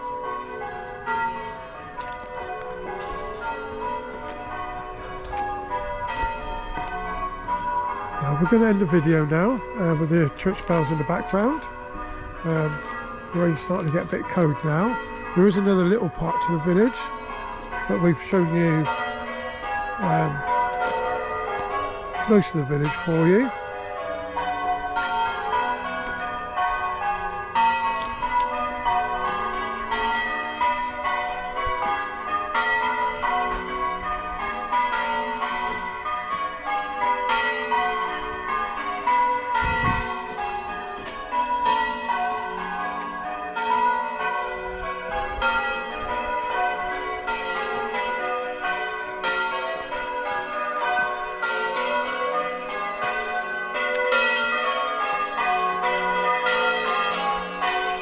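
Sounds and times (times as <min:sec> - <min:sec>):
church bells ringing: 0:00.0 - 0:58.0.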